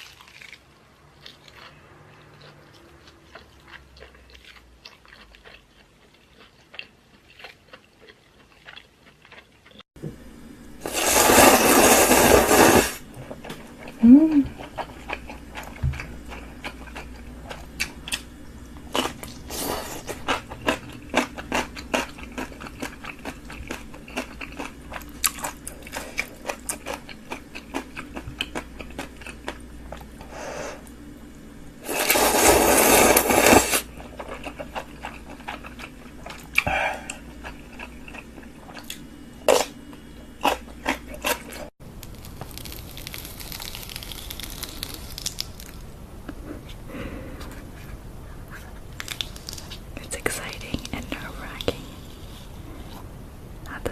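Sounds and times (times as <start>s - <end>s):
chewing and crunching: 0.0s - 9.8s, 13.3s - 30.3s, 33.6s - 45.8s, 48.5s - 49.8s.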